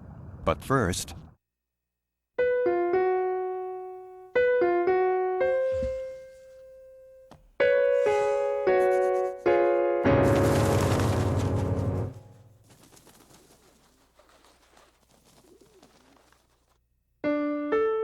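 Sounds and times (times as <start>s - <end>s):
piano-like keyboard melody: 2.4s - 12.5s, 17.2s - 18.0s.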